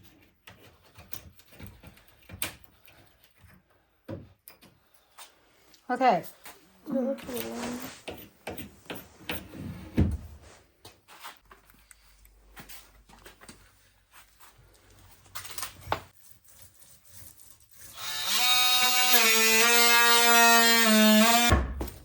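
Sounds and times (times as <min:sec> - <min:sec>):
power tool buzzing whine: 0:18.0 - 0:21.6.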